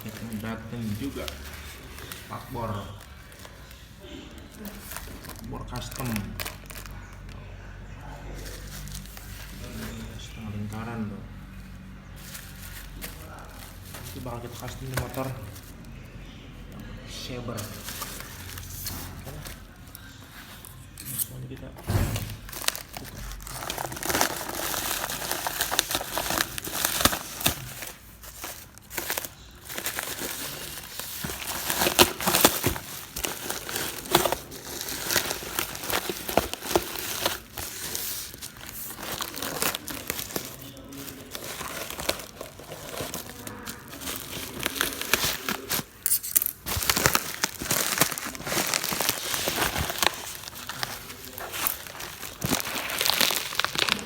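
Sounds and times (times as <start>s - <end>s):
plastic packaging crinkling: 0.0s - 7.4s, 8.3s - 16.3s, 17.1s - 21.2s, 22.2s - 54.0s
packaging tearing: 4.4s - 7.3s, 17.6s - 20.1s, 22.2s - 54.0s.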